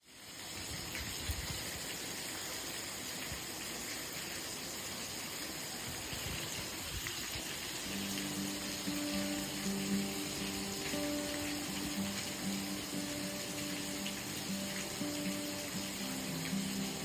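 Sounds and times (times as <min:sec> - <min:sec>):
steady rain hiss: 0:00.0 - 0:17.0
pitched music notes: 0:07.9 - 0:17.0.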